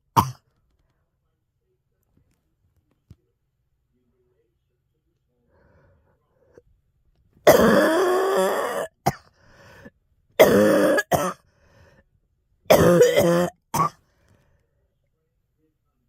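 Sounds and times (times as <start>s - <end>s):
girl coughing: 0.2s - 0.4s, 7.5s - 9.3s, 10.4s - 11.4s, 12.7s - 14.0s.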